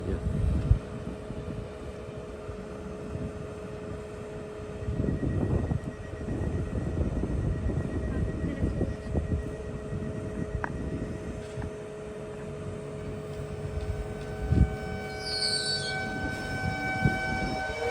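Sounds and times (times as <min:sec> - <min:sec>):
train low rumble: 0:00.0 - 0:17.9
faint high whine: 0:00.1 - 0:17.9
electrical hum with held tones: 0:01.3 - 0:17.9
high falling squeal: 0:13.1 - 0:17.9.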